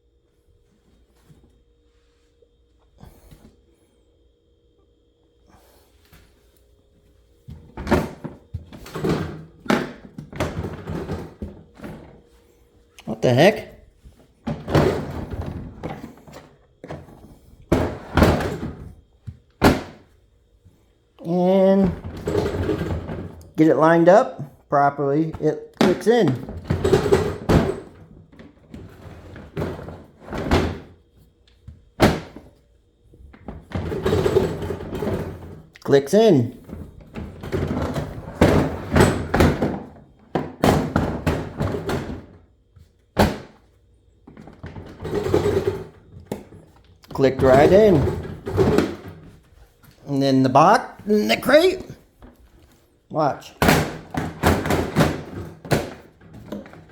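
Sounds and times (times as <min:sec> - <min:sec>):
plastic tool boxes knocking: 0:25.2 - 0:30.9, 0:36.6 - 0:42.4, 0:44.3 - 0:49.4, 0:53.6 - 0:56.9.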